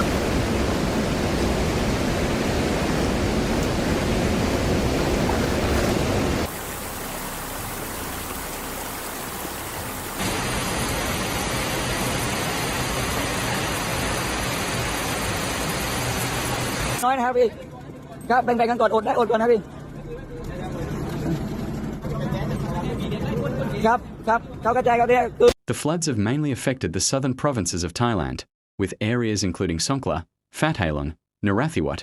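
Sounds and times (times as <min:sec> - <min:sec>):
rushing water: 0:00.0 - 0:17.0.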